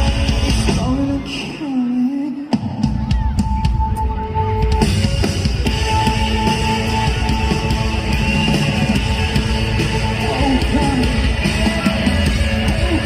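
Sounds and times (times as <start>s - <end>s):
heavy drums: 0.0s - 13.0s
rock band playing: 0.0s - 13.0s.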